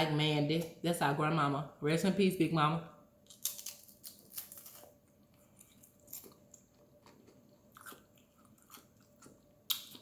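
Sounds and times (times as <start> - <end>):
person chewing food: 3.2 - 10.0.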